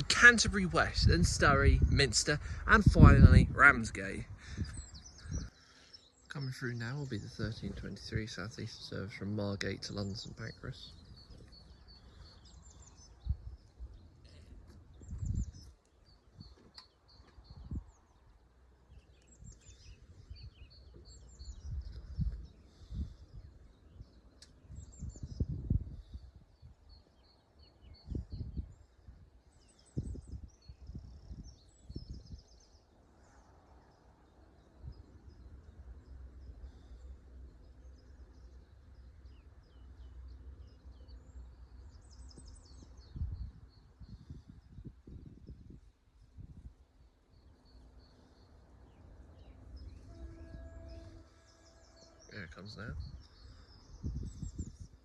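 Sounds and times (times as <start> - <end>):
low rumbles: 0.0 - 6.5
small birds chirping: 0.0 - 55.0.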